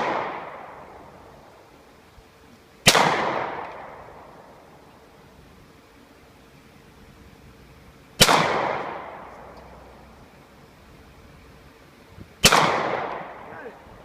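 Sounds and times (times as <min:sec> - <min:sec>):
rifle shots: 0:00.0 - 0:01.0, 0:02.8 - 0:04.5, 0:08.2 - 0:09.4, 0:12.4 - 0:13.5.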